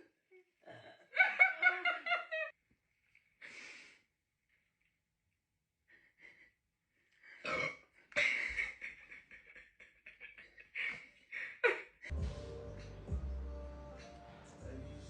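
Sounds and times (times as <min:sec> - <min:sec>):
person burping: 0:07.4 - 0:07.9
breathy sounds: 0:12.1 - 0:15.0.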